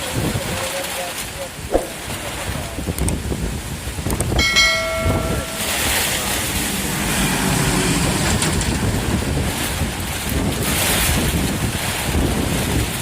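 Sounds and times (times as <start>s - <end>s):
storm wind and rain: 0.0s - 13.0s
wind buffeting microphone: 0.0s - 13.0s
ringing tone: 4.4s - 6.7s.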